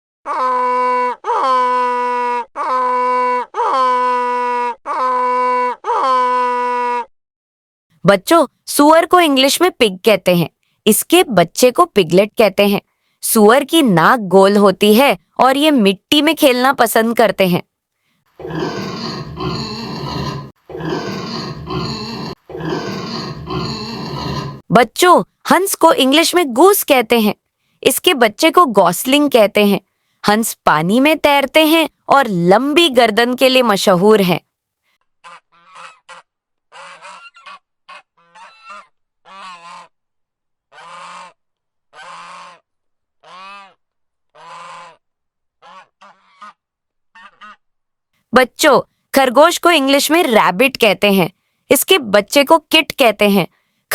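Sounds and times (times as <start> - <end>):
pig grunting: 18.4 - 24.7
goose honking: 35.2 - 39.9, 43.2 - 45.0.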